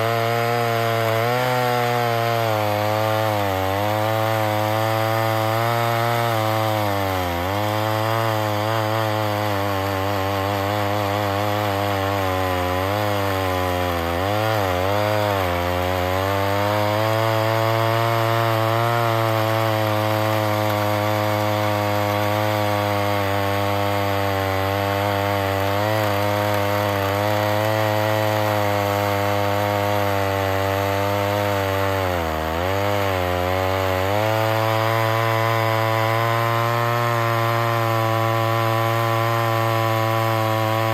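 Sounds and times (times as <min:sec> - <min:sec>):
chainsaw cutting through log: 0:00.0 - 0:40.9.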